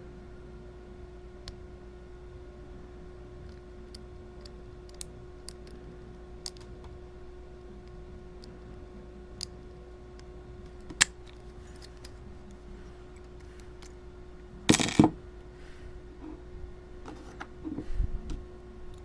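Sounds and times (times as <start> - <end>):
faint steady hum: 0.0 - 19.0
metal clatter: 14.7 - 15.2.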